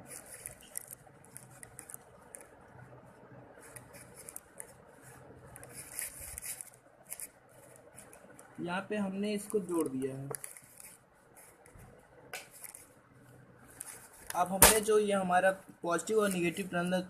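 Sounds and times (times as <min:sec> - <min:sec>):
light rustling and small clicks: 0:00.0 - 0:02.6, 0:09.4 - 0:14.8.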